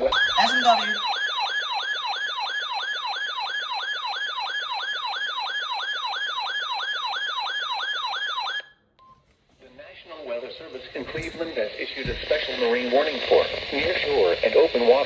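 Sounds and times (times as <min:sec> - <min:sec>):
electronic siren alert tone: 0:00.0 - 0:08.7.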